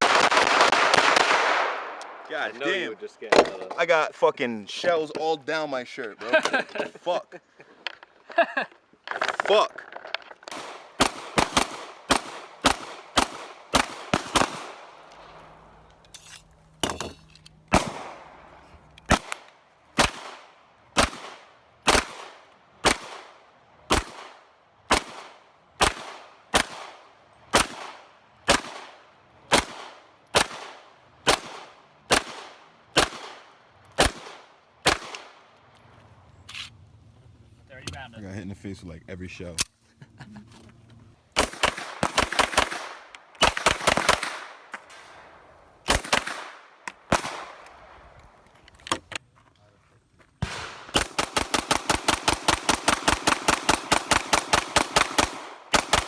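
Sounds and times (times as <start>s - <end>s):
gunshots: 0.0s - 2.2s, 10.5s - 15.9s, 17.7s - 35.5s, 41.4s - 48.0s, 50.4s - 56.0s.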